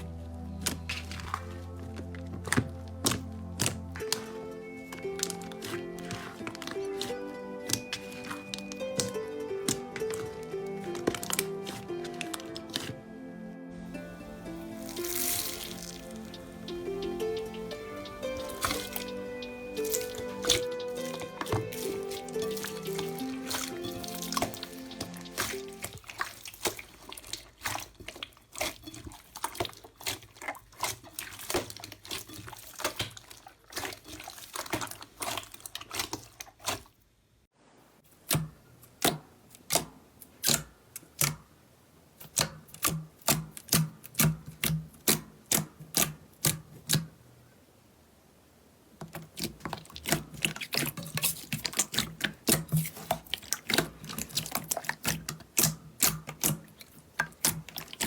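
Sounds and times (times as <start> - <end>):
slime clicking and popping: 0.6 - 12.9, 38.3 - 41.4, 49.4 - 58.0.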